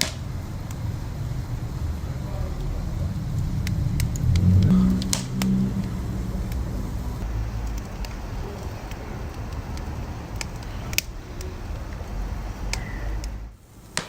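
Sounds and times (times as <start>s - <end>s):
low rumble: 0.0s - 13.6s
wood fire crackling and popping: 0.0s - 14.0s.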